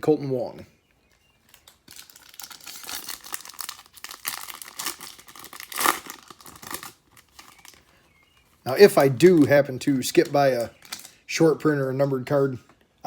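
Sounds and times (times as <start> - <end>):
foil wrapper crinkling: 1.4 - 9.5, 10.1 - 11.2.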